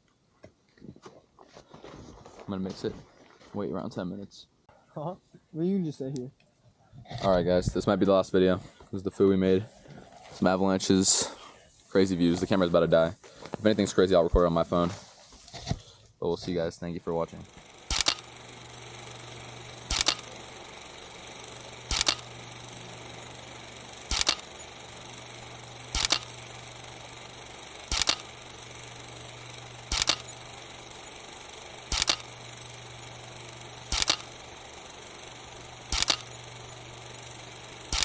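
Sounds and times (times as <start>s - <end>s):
camera shutter double clicks: 17.9s - 18.4s, 19.9s - 20.4s, 21.9s - 22.4s, 24.0s - 24.6s, 25.9s - 26.5s, 27.1s - 28.6s, 29.8s - 30.4s, 31.4s - 32.4s, 33.8s - 34.4s, 35.8s - 36.5s.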